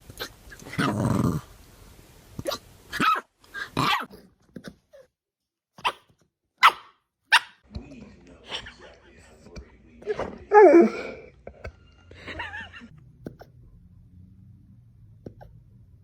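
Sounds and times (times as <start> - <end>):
dog hiccupping: 5.8 - 7.6.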